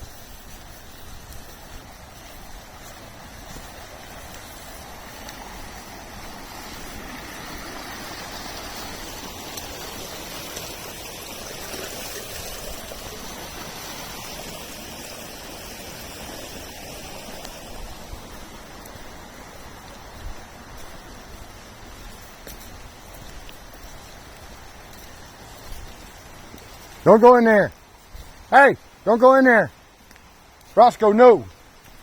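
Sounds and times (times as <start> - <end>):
creek water rushing: 0.0 - 32.0.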